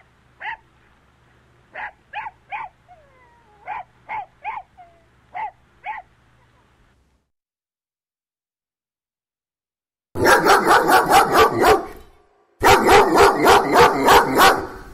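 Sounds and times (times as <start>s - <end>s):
dog barking: 0.4s - 0.7s, 1.7s - 2.8s, 3.6s - 6.1s, 10.2s - 14.9s
faint dog whine: 2.6s - 6.7s.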